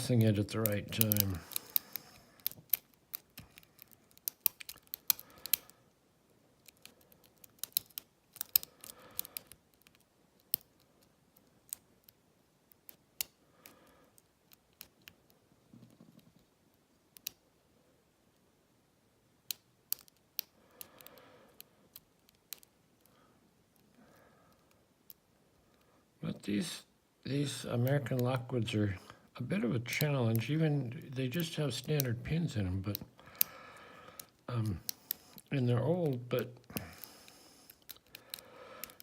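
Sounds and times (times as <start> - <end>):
lock pick clicking and scraping: 0.2 - 5.8, 6.6 - 15.3, 19.5 - 23.1, 36.1 - 39.0.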